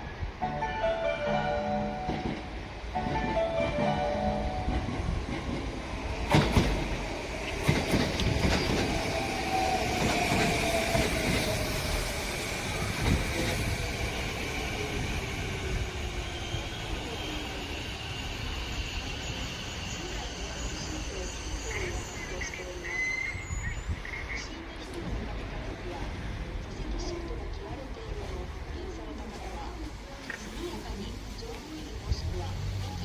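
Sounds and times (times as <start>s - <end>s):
train rumble: 0.0s - 33.0s
train wheels clacking over rail joints: 5.3s - 9.1s.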